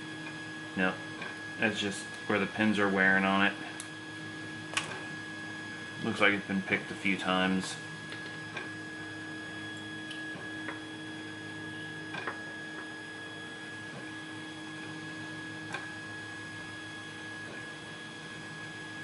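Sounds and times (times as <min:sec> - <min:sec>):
electrical hum: 0:00.0 - 0:19.0.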